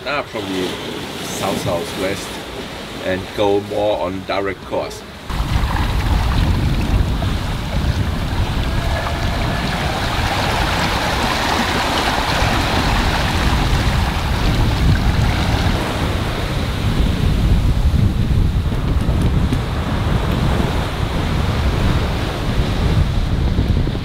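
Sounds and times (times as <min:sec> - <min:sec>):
waves rushing along a hull: 0:00.0 - 0:24.0
wind rumbling on microphone: 0:05.2 - 0:24.0.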